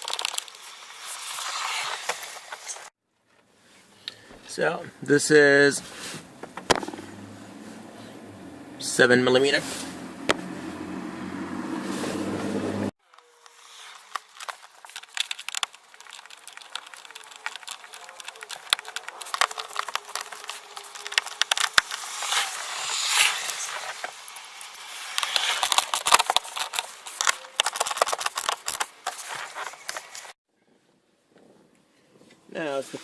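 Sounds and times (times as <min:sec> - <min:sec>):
plastic parts clicking and crackling: 0:00.0 - 0:02.8, 0:13.0 - 0:30.3
hand tool working fastener: 0:13.1 - 0:30.3.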